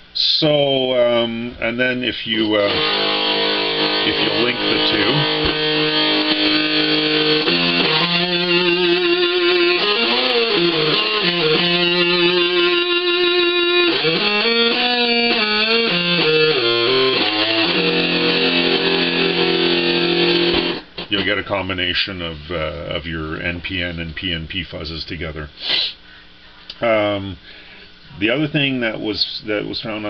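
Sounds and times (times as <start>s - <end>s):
fuzz-distorted electric guitar: 1.1s - 21.4s.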